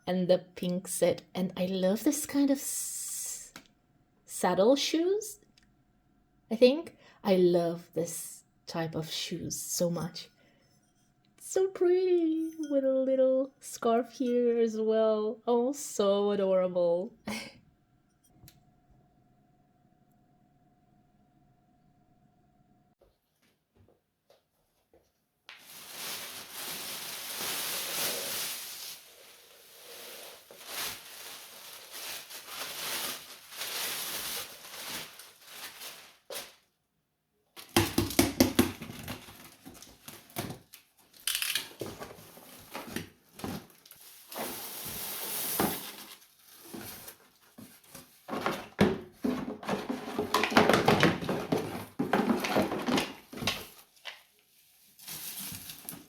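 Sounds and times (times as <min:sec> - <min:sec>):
household objects rustling and clattering: 0:24.4 - 0:36.6, 0:37.6 - 0:56.0.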